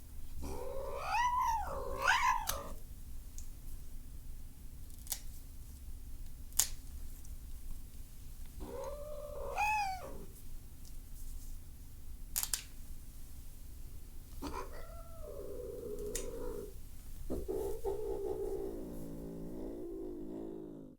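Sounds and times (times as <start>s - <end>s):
cat yowling angrily: 0.4s - 2.8s, 8.6s - 10.2s, 14.4s - 16.7s.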